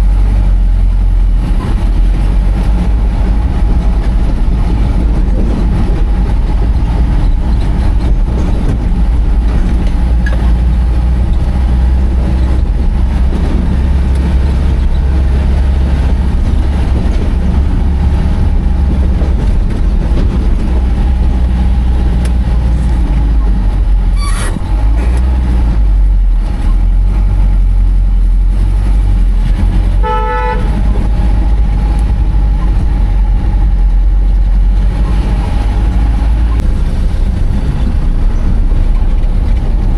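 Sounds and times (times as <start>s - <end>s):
heavy vehicle engine rumbling: 0.0s - 39.9s
horn toot: 30.0s - 31.0s.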